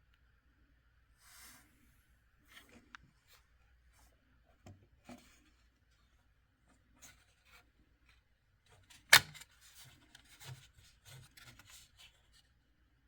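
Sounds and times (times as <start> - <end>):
small clicks and scrapes: 2.5 - 12.5.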